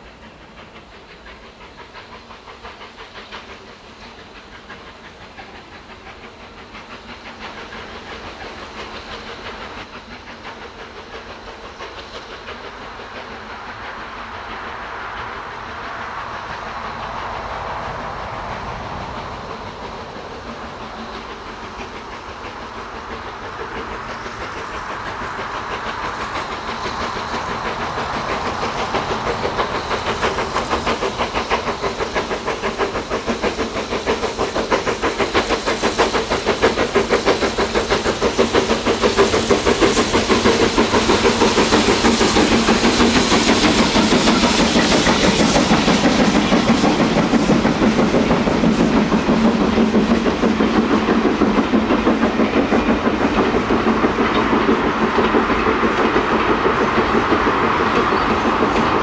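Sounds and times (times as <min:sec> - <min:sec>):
steam locomotive exhaust beating: 0:00.0 - 0:59.0
wheels clattering on rail: 0:14.9 - 0:59.0.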